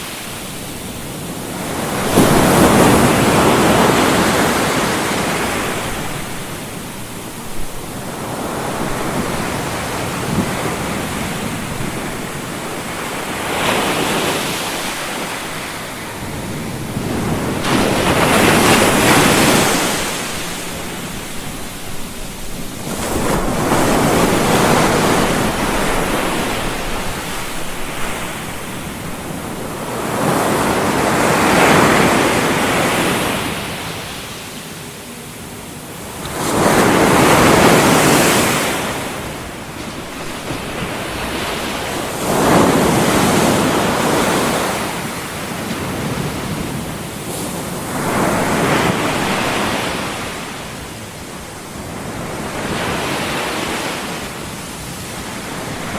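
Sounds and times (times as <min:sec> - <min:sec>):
white noise rushing: 0:00.0 - 0:34.0.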